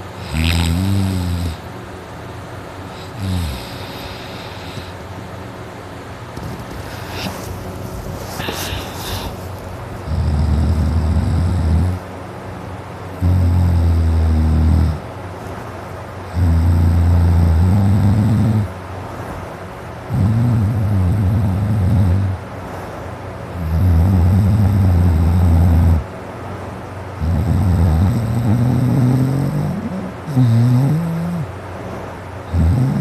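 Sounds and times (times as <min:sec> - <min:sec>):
man snoring deeply: 0:00.0 - 0:01.7, 0:02.9 - 0:05.0, 0:10.0 - 0:12.0, 0:13.2 - 0:15.0, 0:16.3 - 0:18.7, 0:20.1 - 0:22.4, 0:23.6 - 0:26.1, 0:27.2 - 0:31.5, 0:32.5 - 0:33.0
man breathing: 0:02.9 - 0:05.1, 0:06.8 - 0:09.6.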